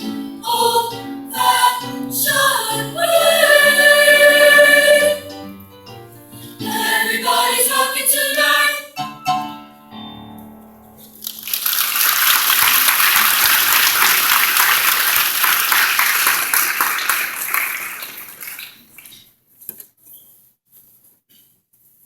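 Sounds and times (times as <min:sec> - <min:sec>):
choir holding chord: 0:00.0 - 0:05.5, 0:06.6 - 0:09.0
audience applause: 0:11.2 - 0:19.1.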